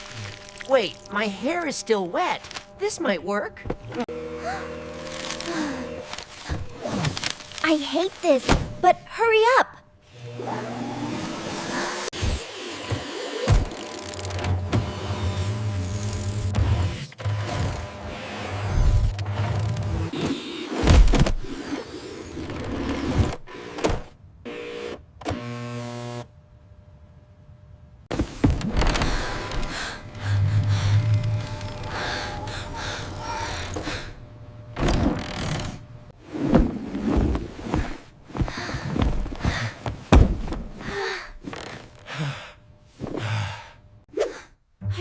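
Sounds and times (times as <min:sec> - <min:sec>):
knocks and thuds: 0:38.4 - 0:40.8.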